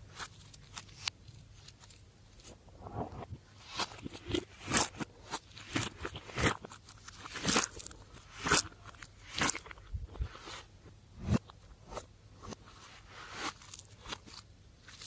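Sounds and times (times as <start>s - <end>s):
slime popping and crackling: 3.6s - 9.8s.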